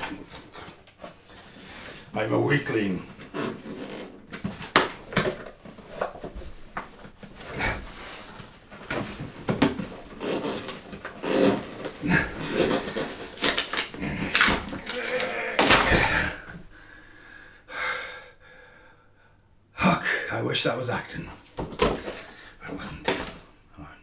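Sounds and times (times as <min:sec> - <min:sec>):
box knocks scrapes and rustles: 0:03.0 - 0:14.9
person grunting and breathing: 0:07.5 - 0:08.0, 0:14.0 - 0:19.0.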